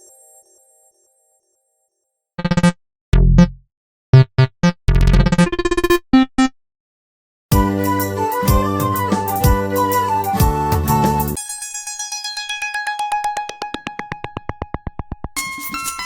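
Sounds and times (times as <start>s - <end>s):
synthesized ringtone melody: 2.4s - 2.7s, 5.0s - 6.5s.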